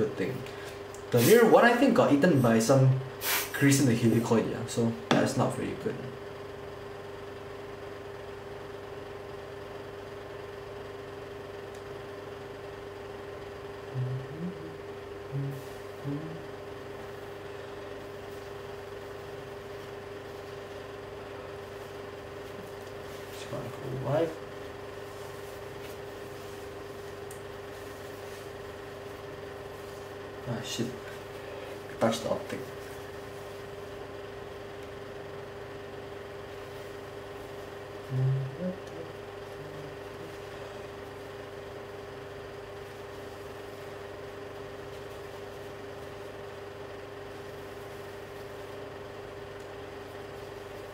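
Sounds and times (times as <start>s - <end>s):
background hum: 0.0s - 50.9s
even hiss: 1.1s - 1.8s, 3.1s - 3.9s, 13.9s - 16.4s
light hiss: 3.2s - 3.6s
short low sounds: 13.9s - 16.6s, 38.1s - 40.3s.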